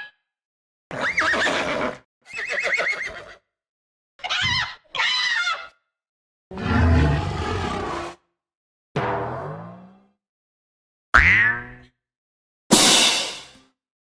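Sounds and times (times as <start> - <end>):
horse neighing: 0.9 - 3.4.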